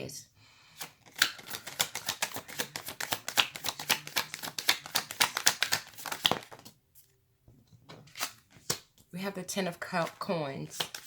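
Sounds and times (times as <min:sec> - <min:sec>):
deck of cards shuffled by hand: 0:00.8 - 0:07.1, 0:08.1 - 0:08.9, 0:10.0 - 0:11.0.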